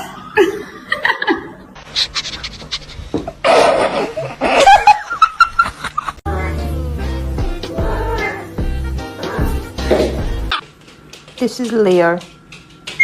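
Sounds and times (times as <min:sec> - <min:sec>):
person laughing hard: 0:03.4 - 0:06.2.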